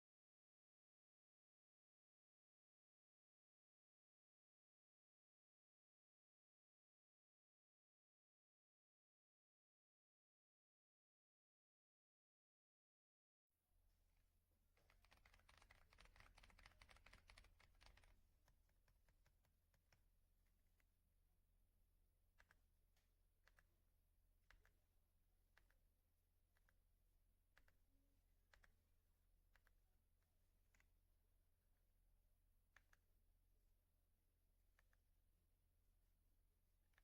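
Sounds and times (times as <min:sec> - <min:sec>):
mechanical keyboard typing: 0:14.8 - 0:18.2.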